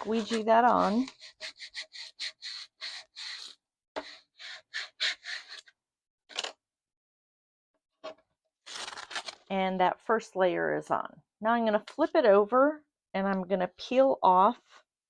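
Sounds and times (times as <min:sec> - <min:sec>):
squeegee rubbing tape: 0:00.0 - 0:05.7.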